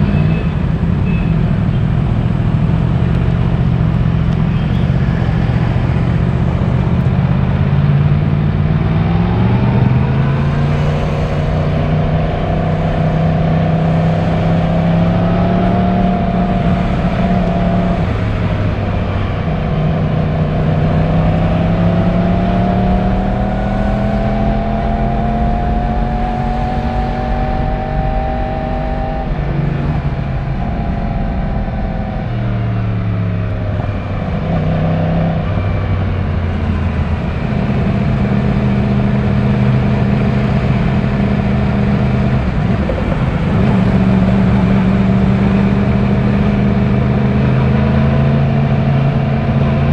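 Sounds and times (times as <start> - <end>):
motorcycle engine revving: 0.0 - 49.9.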